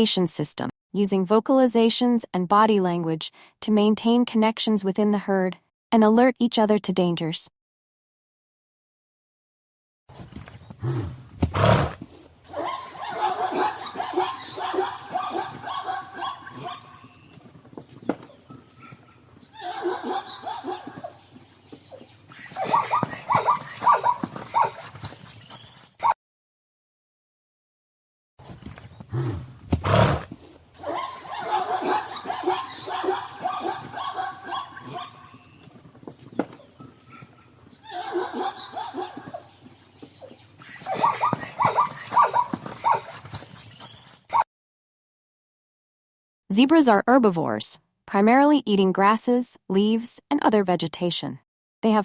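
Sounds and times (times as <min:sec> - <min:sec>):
zebra calling: 0:12.5 - 0:24.9, 0:29.8 - 0:43.2.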